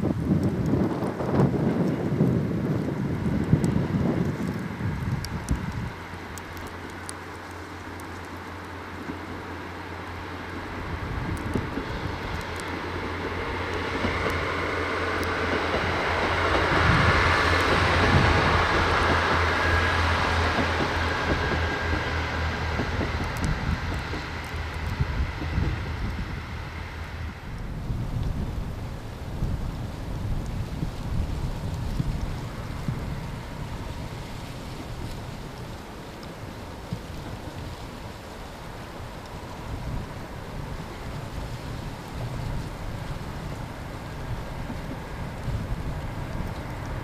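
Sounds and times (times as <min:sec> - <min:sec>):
diesel train passing: 0:00.0 - 0:47.0
low engine drone: 0:00.0 - 0:47.0.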